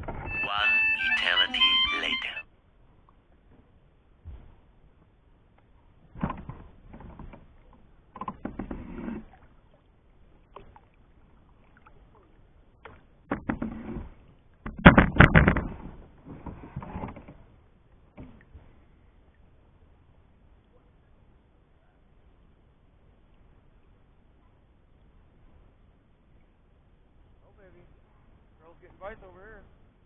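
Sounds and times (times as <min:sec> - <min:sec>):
paddle strokes splashing water: 0:05.9 - 0:14.7.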